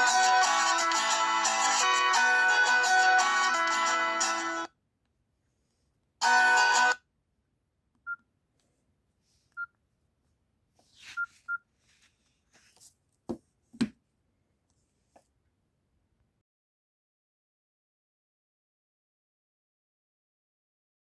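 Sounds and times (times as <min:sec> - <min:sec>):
phone ringtone: 0:06.2 - 0:07.0.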